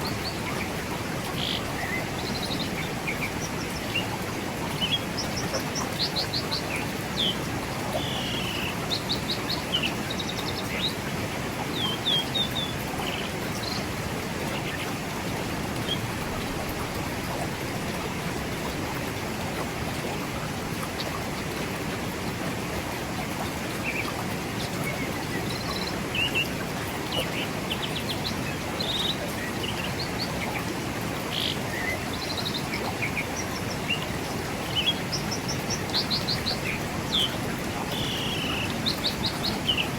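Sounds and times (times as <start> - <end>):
birds chirping: 0.0 - 11.1, 27.2 - 39.9
river running over rocks: 0.0 - 39.9.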